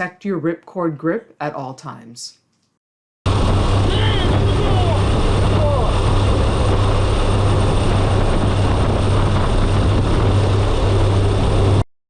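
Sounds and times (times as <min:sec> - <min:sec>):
propeller engines droning: 0:03.3 - 0:11.8
wind rush: 0:03.3 - 0:11.8.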